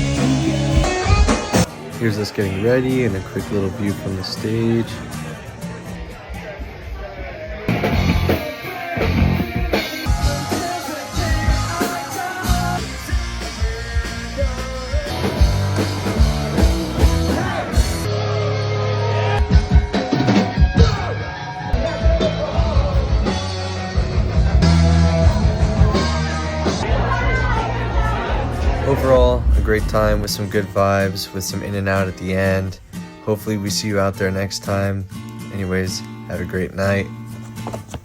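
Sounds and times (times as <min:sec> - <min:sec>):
drum kit: 0:00.0 - 0:02.0, 0:07.7 - 0:18.2, 0:19.4 - 0:21.2, 0:21.8 - 0:32.0
rock music: 0:00.0 - 0:37.4
guitar: 0:00.0 - 0:38.0
person singing: 0:07.4 - 0:20.1, 0:20.8 - 0:31.4.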